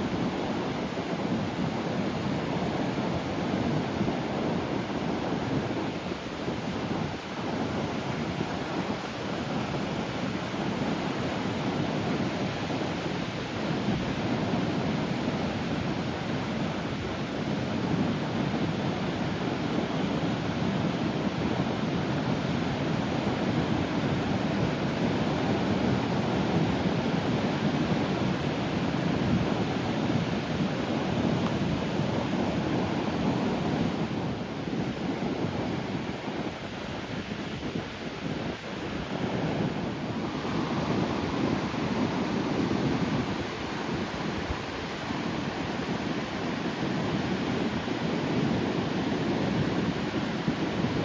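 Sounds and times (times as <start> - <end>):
sea waves breaking on shore: 23.6 - 51.0.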